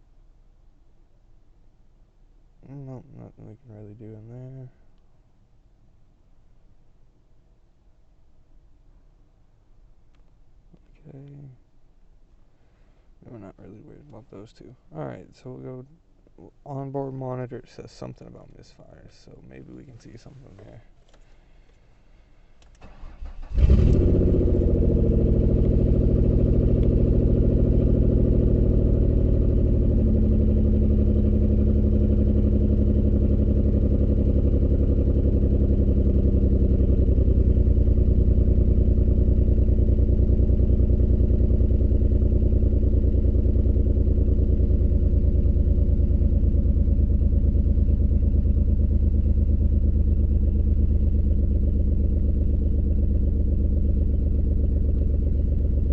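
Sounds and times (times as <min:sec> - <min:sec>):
car engine cranking: 0:22.6 - 0:29.6
car engine idling with misfire: 0:22.8 - 0:55.9.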